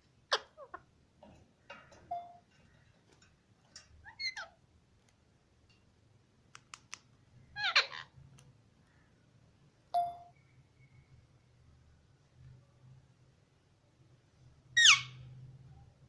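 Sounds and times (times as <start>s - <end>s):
parrots chirping and squawking: 0.3s - 0.9s, 4.0s - 4.6s, 7.6s - 8.1s, 14.8s - 15.2s
sharp clicks: 6.5s - 7.1s.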